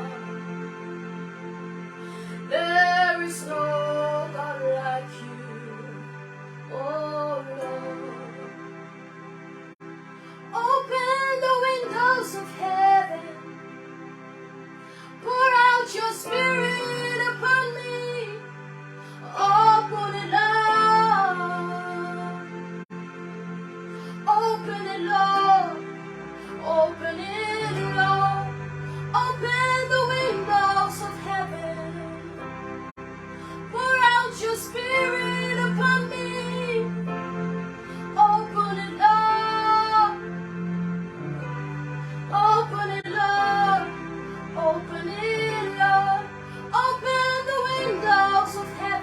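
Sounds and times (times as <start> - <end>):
sustained keyboard chords: 0.0 - 49.0
woman singing gospel melody: 10.6 - 13.4, 15.2 - 18.4, 19.2 - 22.4, 24.2 - 25.8, 33.7 - 36.9, 44.6 - 49.0.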